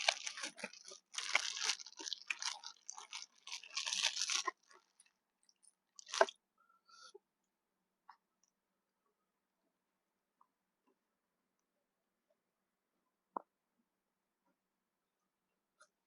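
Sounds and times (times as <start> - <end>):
crunchy chewing: 0.0 - 5.1, 6.0 - 6.3.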